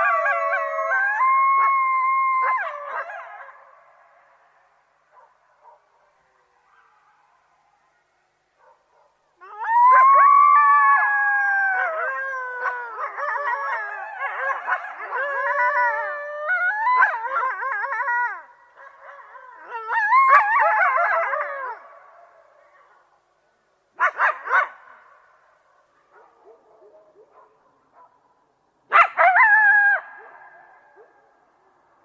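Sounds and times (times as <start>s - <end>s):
coyotes howling: 9.4s - 22.9s.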